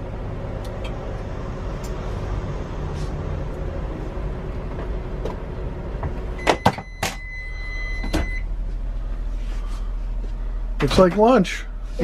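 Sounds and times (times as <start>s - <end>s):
microwave oven humming: 0.0s - 12.0s
high electronic beep: 6.4s - 8.4s.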